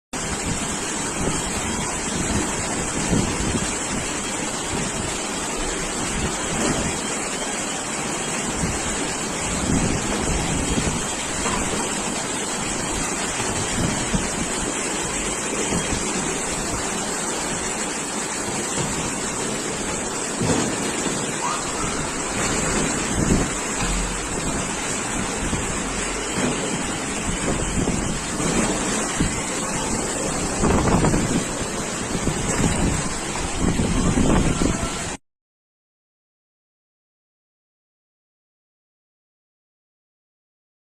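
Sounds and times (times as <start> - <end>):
wind buffeting microphone: 0.2 - 7.0, 8.5 - 17.7, 20.4 - 35.2
storm wind gusting: 20.4 - 34.9.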